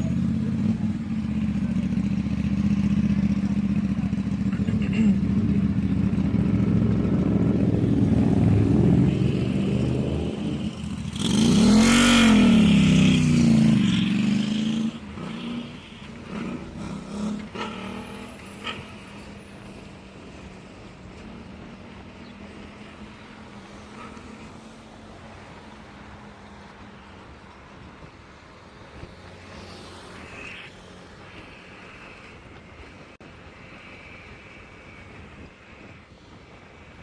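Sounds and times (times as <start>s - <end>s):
engine revving as vehicle passes: 0.0s - 37.0s
vehicle engines running: 0.0s - 37.0s.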